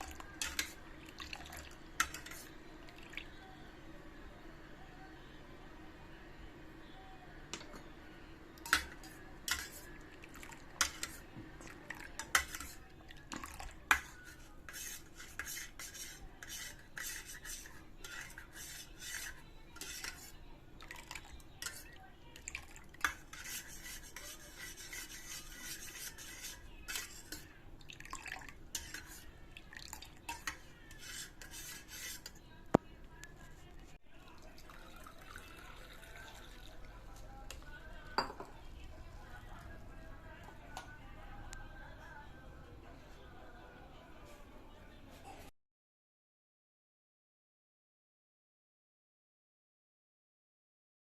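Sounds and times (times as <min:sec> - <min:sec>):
metal spoon clinking and scraping: 0:00.0 - 0:00.8, 0:02.0 - 0:02.5, 0:08.6 - 0:10.0, 0:10.8 - 0:11.2, 0:12.2 - 0:20.4, 0:21.6 - 0:21.9, 0:23.0 - 0:27.5, 0:28.7 - 0:29.3, 0:30.2 - 0:32.4.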